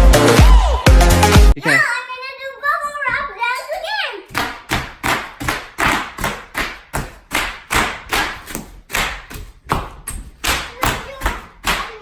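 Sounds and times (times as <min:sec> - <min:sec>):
stomping thuds: 0:04.3 - 0:12.0.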